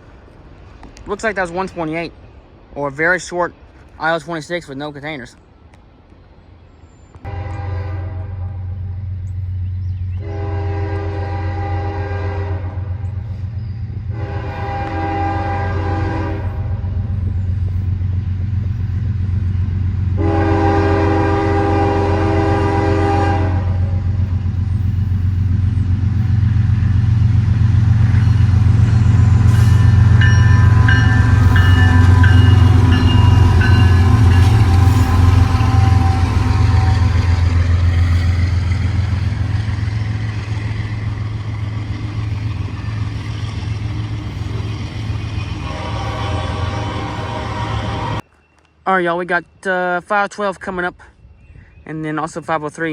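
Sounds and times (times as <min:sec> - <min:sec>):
locomotive engine rumble: 0:00.0 - 0:48.4
train air horn blasts: 0:07.3 - 0:08.9, 0:10.2 - 0:13.0, 0:14.1 - 0:17.0, 0:20.2 - 0:24.0, 0:29.4 - 0:38.9, 0:45.4 - 0:48.2.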